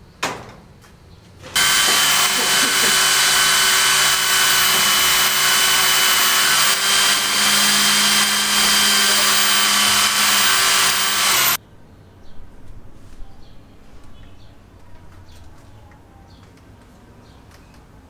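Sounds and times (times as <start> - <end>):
power tool whining: 1.5 - 11.6.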